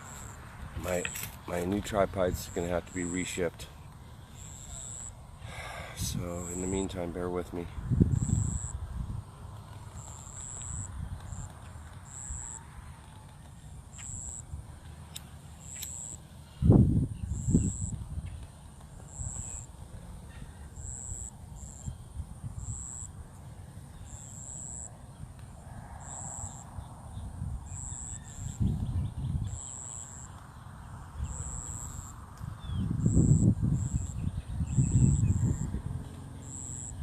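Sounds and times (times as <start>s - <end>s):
high-pitched insect call pulsing: 0.0s - 1.3s, 4.3s - 5.2s, 8.1s - 8.9s, 10.0s - 12.6s, 13.9s - 14.4s, 15.6s - 16.2s, 17.3s - 18.0s, 19.1s - 19.7s, 20.8s - 22.0s, 22.6s - 23.1s, 27.7s - 28.7s, 29.4s - 30.4s, 31.2s - 37.0s
faint birdsong: 0.0s - 37.0s
wind buffeting microphone: 5.9s - 11.5s, 16.6s - 18.7s, 26.8s - 29.7s, 32.4s - 36.2s.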